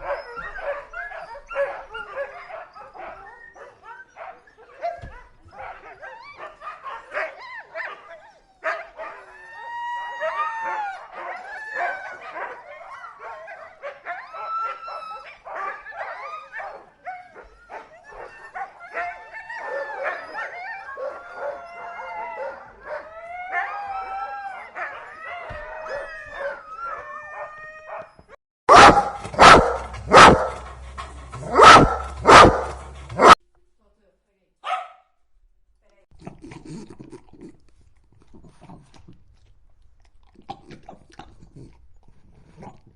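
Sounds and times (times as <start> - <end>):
dog barking: 0.0 - 9.3, 11.1 - 14.2, 15.5 - 21.6, 28.7 - 30.7, 31.4 - 33.4, 34.6 - 35.1
dog whining and howling: 0.0 - 33.4.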